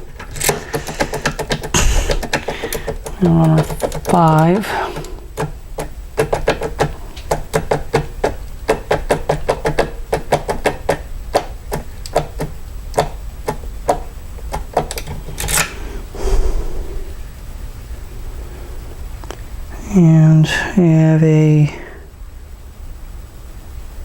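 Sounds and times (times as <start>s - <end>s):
key scraping in lock: 0.0s - 11.0s, 14.5s - 15.8s.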